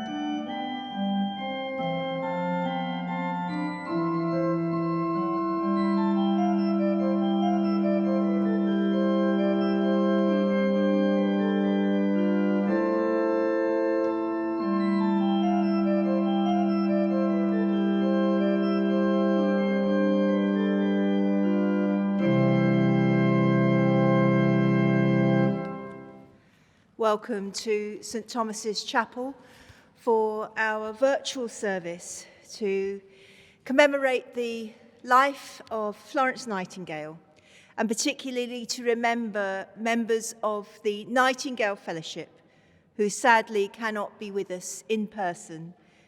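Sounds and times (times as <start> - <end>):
organ playing sustained chords: 0.0 - 26.4.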